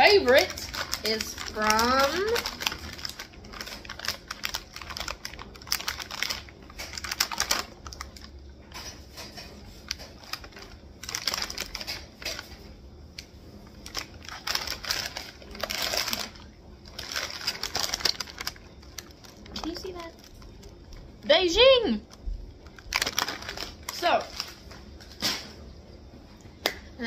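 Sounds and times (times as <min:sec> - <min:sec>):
plastic packaging crinkling: 0:00.0 - 0:25.5.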